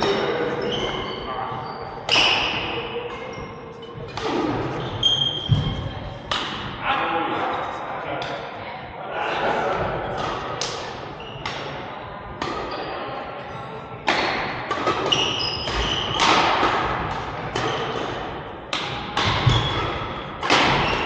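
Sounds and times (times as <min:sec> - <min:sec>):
shoes squeaking: 0:00.0 - 0:05.9, 0:11.2 - 0:11.6, 0:14.8 - 0:16.5, 0:19.2 - 0:21.0
rackets hitting shuttlecock: 0:04.0 - 0:06.8, 0:10.1 - 0:11.7, 0:12.4 - 0:12.9, 0:14.0 - 0:21.0.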